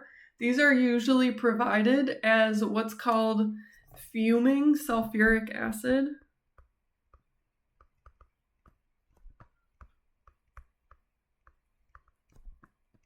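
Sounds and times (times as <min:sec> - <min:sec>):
pen tapping while writing: 0:06.5 - 0:13.0.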